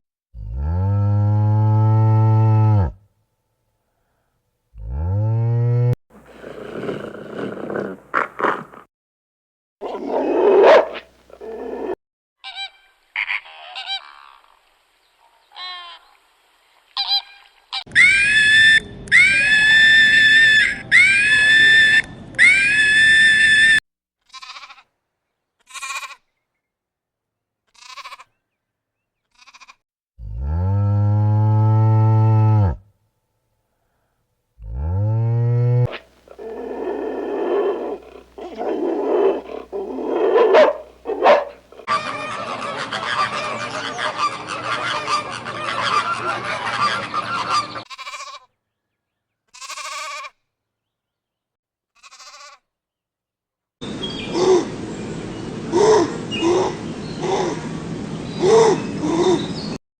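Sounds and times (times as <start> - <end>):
cow mooing: 9.8 - 12.0, 34.6 - 41.9
farmyard background noise: 9.9 - 14.5, 25.6 - 26.4, 27.7 - 28.4, 35.2 - 48.6, 49.5 - 50.4, 52.0 - 52.6, 53.8 - 59.8
animals bleating: 24.3 - 24.8, 25.7 - 26.2, 27.7 - 28.3, 29.3 - 29.8, 35.9 - 41.9, 47.9 - 48.4, 49.6 - 50.3, 52.0 - 52.6.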